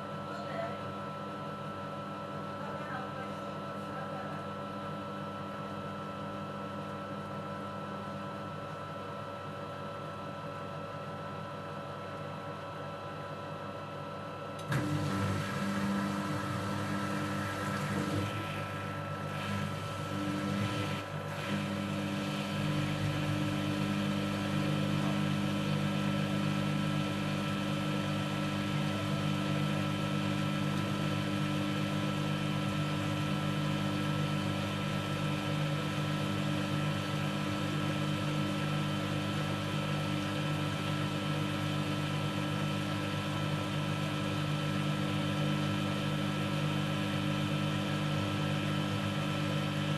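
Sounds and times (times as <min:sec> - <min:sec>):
washing machine motor hum: 0:14.4 - 0:49.9.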